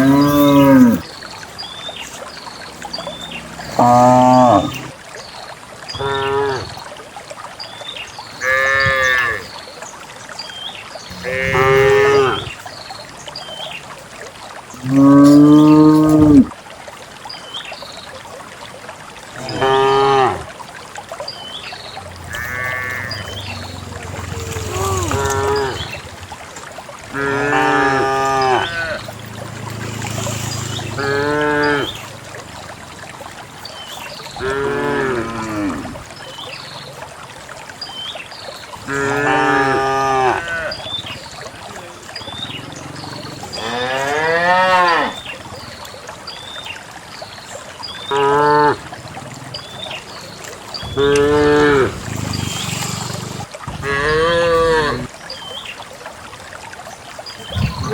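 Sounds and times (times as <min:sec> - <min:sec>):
cows mooing: 0:00.0 - 0:01.0, 0:02.5 - 0:04.9, 0:05.9 - 0:06.8, 0:08.4 - 0:09.5, 0:11.1 - 0:12.5, 0:14.8 - 0:16.5, 0:19.4 - 0:20.5, 0:22.1 - 0:26.3, 0:27.1 - 0:32.1, 0:34.4 - 0:36.0, 0:38.8 - 0:40.8, 0:42.4 - 0:45.2, 0:48.1 - 0:49.7, 0:50.8 - 0:53.2, 0:53.8 - 0:55.1.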